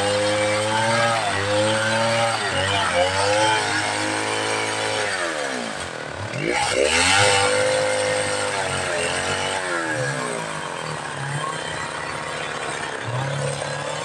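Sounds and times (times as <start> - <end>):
chainsaw running at high revs: 0.0 - 14.0.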